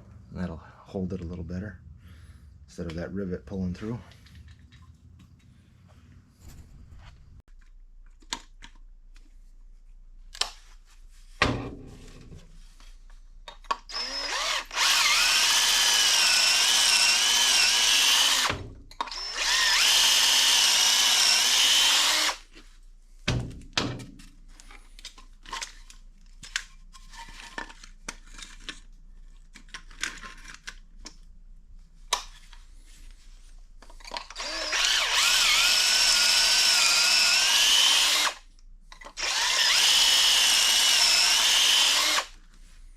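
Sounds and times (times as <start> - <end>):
power drill whining: 13.9 - 22.5, 34.1 - 38.4, 39.0 - 42.4.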